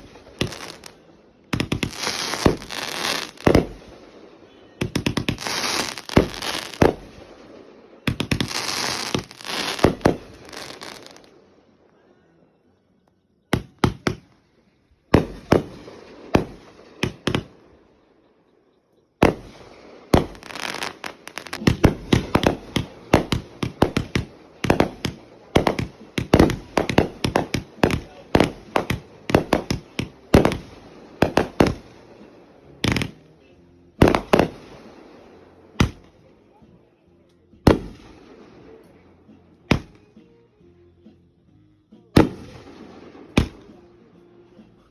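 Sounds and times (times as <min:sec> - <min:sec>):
fireworks bangs: 0:00.0 - 0:11.4, 0:13.5 - 0:14.4, 0:15.1 - 0:17.8, 0:19.2 - 0:33.3, 0:34.0 - 0:36.3, 0:37.6 - 0:38.9, 0:42.2 - 0:44.0.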